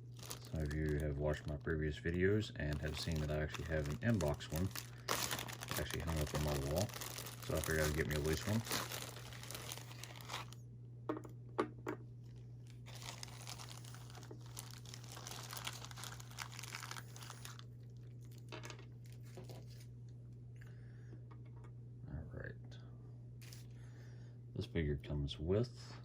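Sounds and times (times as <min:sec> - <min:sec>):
plastic packaging crinkling: 0:00.0 - 0:10.6, 0:12.6 - 0:19.8
low electrical hum: 0:00.0 - 0:26.0.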